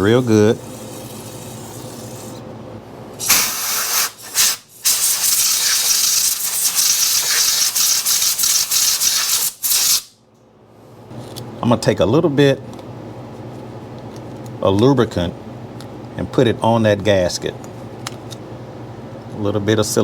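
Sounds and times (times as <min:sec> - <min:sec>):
aerosol can spraying: 0:03.2 - 0:10.1.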